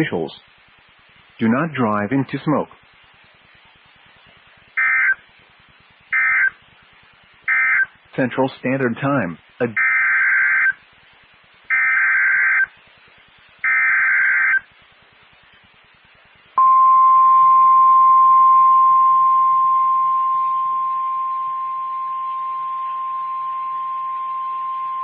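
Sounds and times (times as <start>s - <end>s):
steady warning alarm tone: 16.6s - 25.0s.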